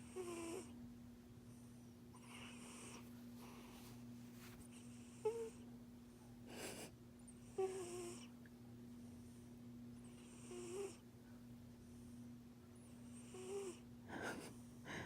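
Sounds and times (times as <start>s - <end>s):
cat snoring: 0.0s - 0.7s, 2.2s - 3.0s, 4.8s - 5.6s, 7.5s - 8.3s, 10.1s - 11.0s, 13.0s - 13.8s.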